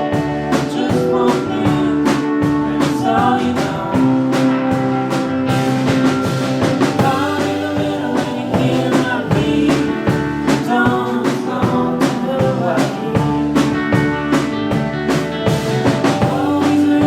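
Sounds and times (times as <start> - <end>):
live rock band playing: 0.0 - 17.0.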